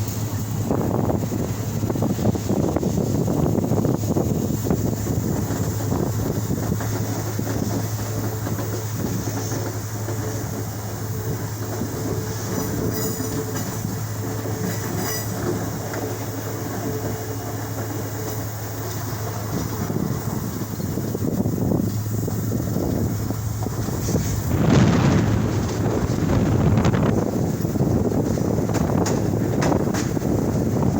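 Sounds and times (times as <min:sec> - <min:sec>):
wind noise: 0:00.0 - 0:30.9
vehicle rumble: 0:16.9 - 0:30.9.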